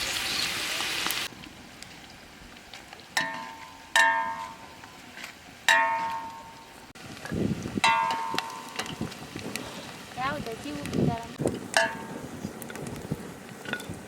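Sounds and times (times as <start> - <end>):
metallic clanks ringing: 3.2 - 4.7, 5.7 - 6.7, 7.8 - 9.0.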